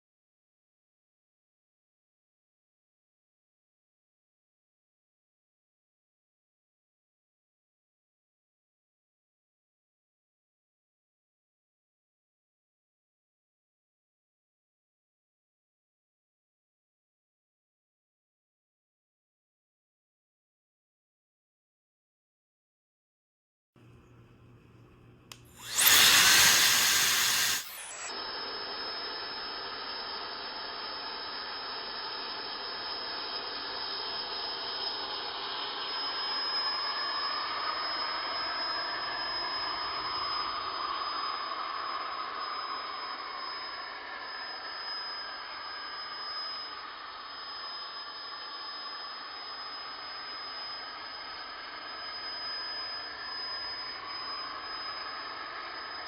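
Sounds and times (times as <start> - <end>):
electric machine whining: 25.3 - 28.1.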